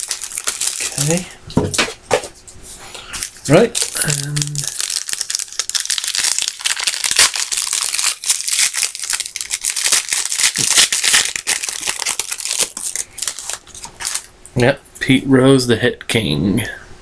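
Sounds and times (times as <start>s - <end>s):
wrapper crinkling and tearing: 0.0s - 1.2s, 3.2s - 14.3s.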